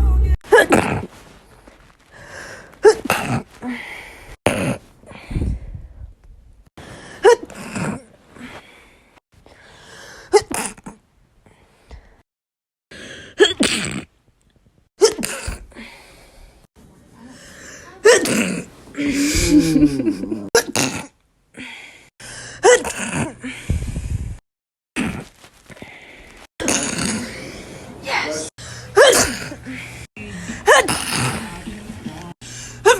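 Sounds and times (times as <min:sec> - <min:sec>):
person sneezing: 0:00.5 - 0:01.2, 0:02.8 - 0:03.8, 0:07.2 - 0:08.0, 0:13.4 - 0:14.0, 0:15.0 - 0:15.6, 0:18.0 - 0:20.0, 0:26.6 - 0:27.6, 0:28.2 - 0:29.8, 0:30.5 - 0:31.6.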